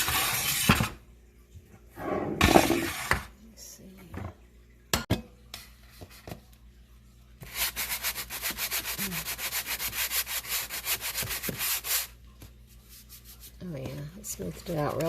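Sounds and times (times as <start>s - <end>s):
hand sanding scraping strokes: 7.5s - 12.2s.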